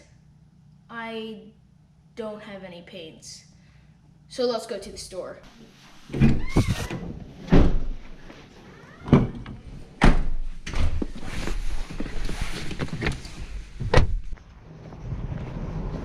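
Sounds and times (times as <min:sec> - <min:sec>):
doors shutting with thuds: 0:06.1 - 0:11.2, 0:12.8 - 0:14.4.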